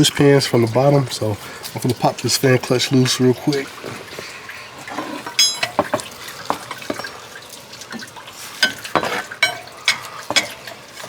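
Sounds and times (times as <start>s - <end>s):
coolant trickling into pan: 0.0s - 11.0s
metal tools clinking: 5.3s - 5.9s.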